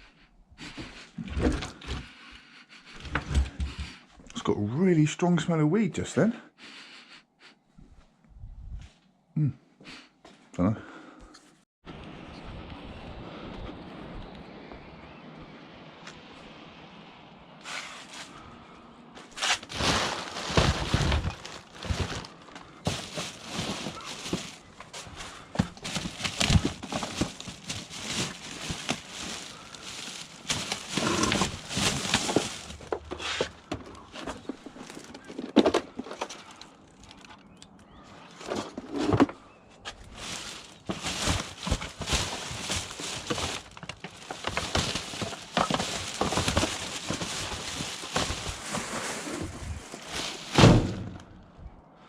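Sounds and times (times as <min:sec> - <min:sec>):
knocks and clatters of rubbish: 0:01.2 - 0:02.2, 0:19.2 - 0:36.6, 0:38.3 - 0:51.2
footsteps: 0:19.2 - 0:35.1, 0:39.8 - 0:50.5.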